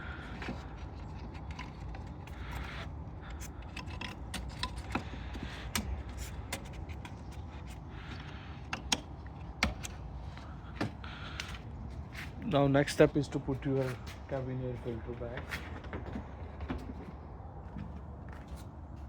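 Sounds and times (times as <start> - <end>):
clicks taps and scrapes of parts: 0.1 - 13.0.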